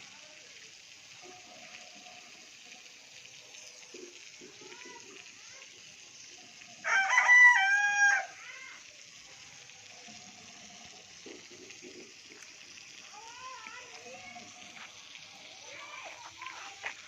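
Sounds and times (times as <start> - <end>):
rooster crowing: 6.8 - 8.4.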